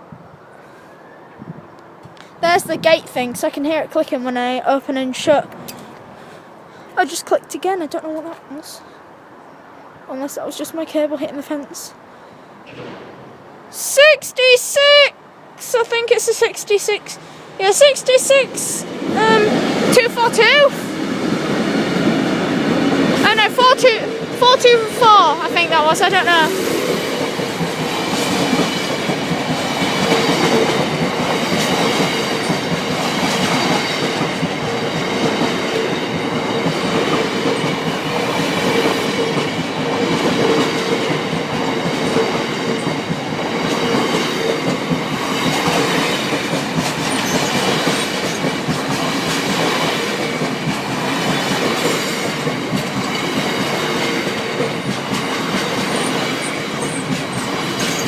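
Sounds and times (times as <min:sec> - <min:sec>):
freight train wheels clacking: 0:16.3 - 0:58.0.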